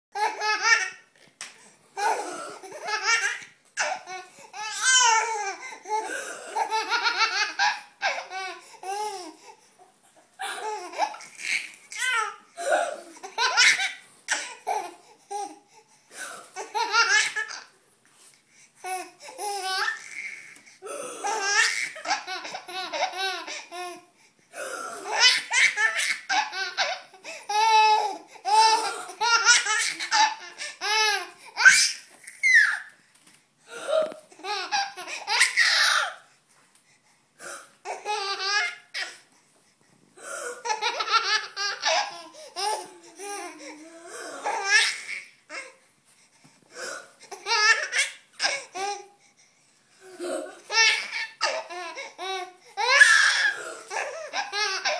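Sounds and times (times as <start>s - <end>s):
baby laughing hysterically: 2.0s - 8.6s, 10.4s - 15.0s, 16.6s - 17.7s, 21.2s - 23.8s, 25.0s - 32.9s, 34.4s - 36.2s, 40.6s - 43.3s, 47.3s - 48.9s, 50.2s - 54.9s.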